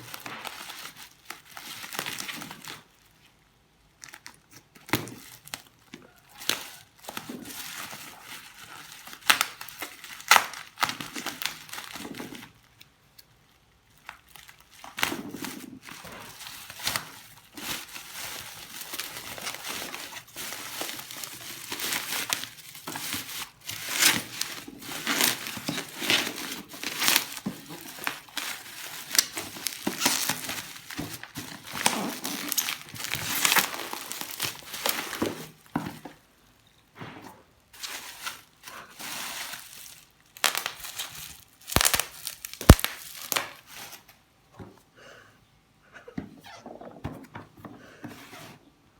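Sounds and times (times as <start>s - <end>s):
packaging crinkling and rustling: 0.0s - 36.7s, 37.3s - 44.2s
sharp crackles: 40.4s - 43.6s.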